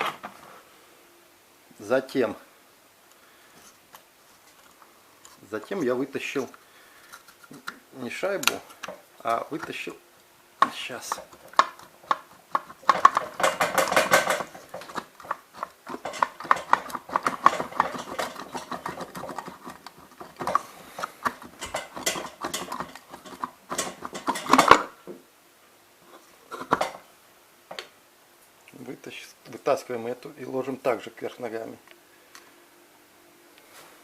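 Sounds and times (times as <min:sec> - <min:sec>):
small hard parts clattering: 0:10.6 - 0:24.9, 0:26.5 - 0:27.0.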